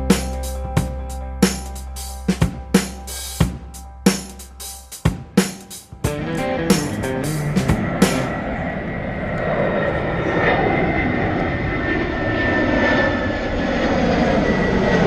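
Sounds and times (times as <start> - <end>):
steady rushing noise: 1.7 - 11.1.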